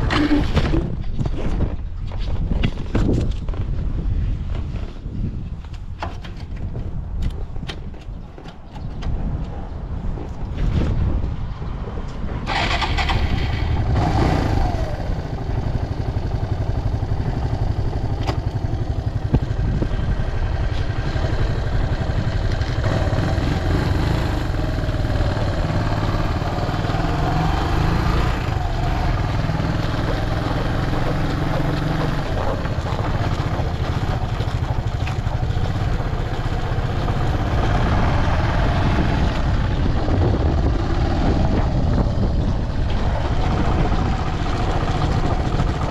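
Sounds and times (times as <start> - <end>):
motorcycle engine running: 12.6 - 45.9.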